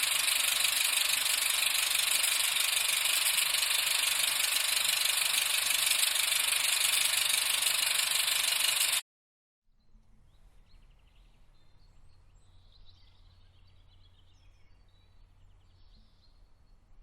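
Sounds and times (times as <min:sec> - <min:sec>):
dense hissy rattling: 0:00.0 - 0:09.0.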